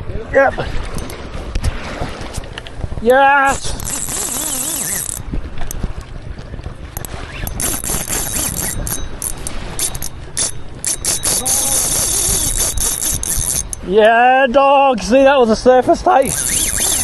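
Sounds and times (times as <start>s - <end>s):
fishing reel drag clicking: 3.5s - 5.8s, 6.9s - 13.9s, 16.2s - 17.0s.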